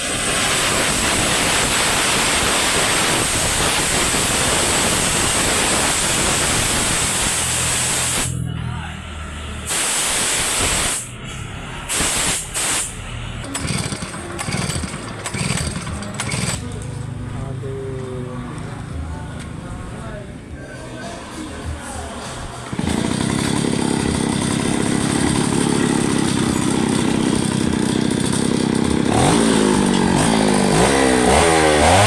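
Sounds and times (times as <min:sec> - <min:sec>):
pressurised spray hissing: 0:00.0 - 0:08.4, 0:09.7 - 0:11.1, 0:11.9 - 0:13.0.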